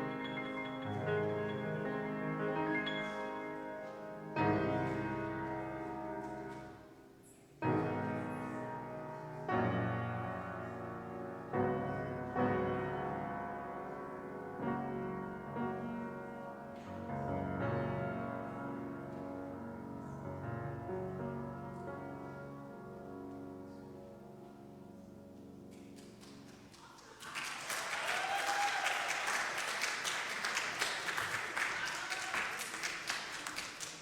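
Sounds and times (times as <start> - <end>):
solo piano playing: 0.0 - 26.3.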